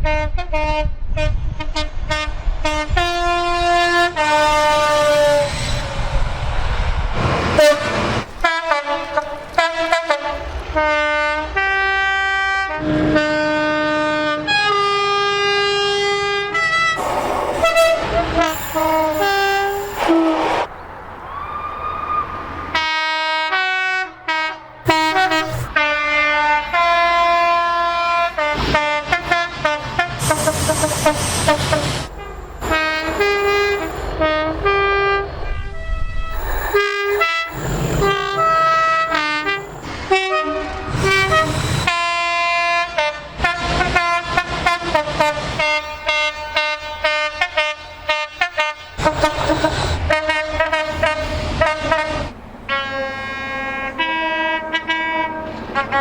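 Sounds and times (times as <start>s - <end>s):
train horn blasts: 0.0s - 6.1s, 7.5s - 20.6s, 22.7s - 56.0s
rushing noise: 1.4s - 11.6s, 17.0s - 23.0s, 24.8s - 26.0s, 28.2s - 42.4s, 43.5s - 52.8s.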